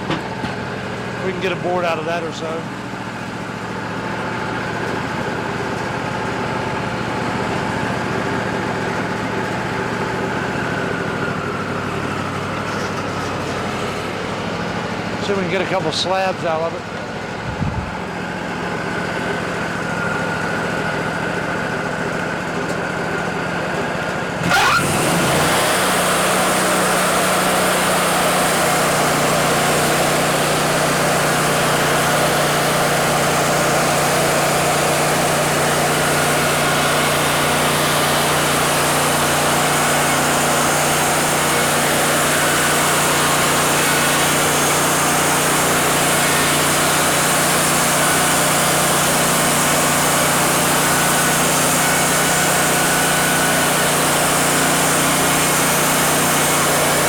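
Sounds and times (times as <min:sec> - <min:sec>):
band sawmill running: 0:00.0 - 0:57.0
engine revving with rising whine: 0:24.3 - 0:57.0
saw blade cutting log: 0:24.4 - 0:57.0.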